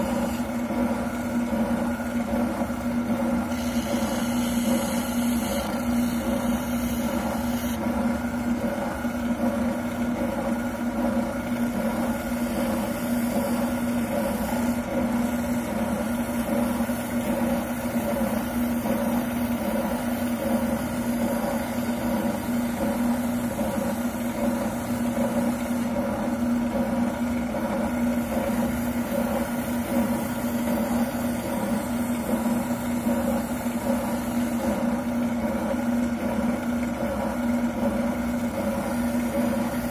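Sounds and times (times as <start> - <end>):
sander humming: 0.0 - 9.3.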